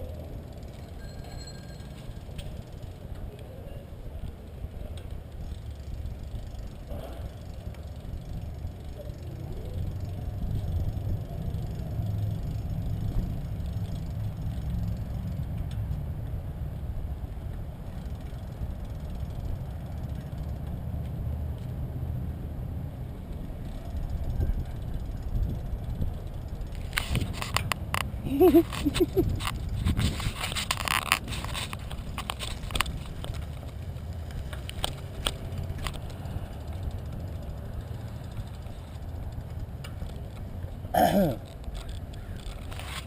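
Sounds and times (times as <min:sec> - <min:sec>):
bicycle riding along street: 0:00.0 - 0:43.0
wind rumbling on microphone: 0:08.2 - 0:19.9, 0:21.8 - 0:40.7.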